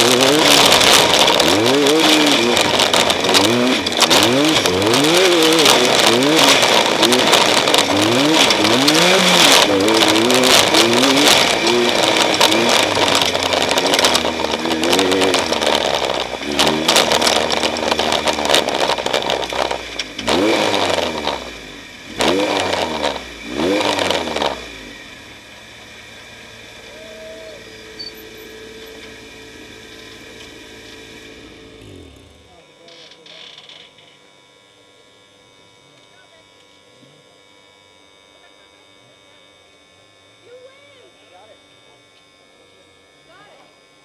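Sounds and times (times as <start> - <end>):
race vehicle engine revving: 0.0 - 33.0.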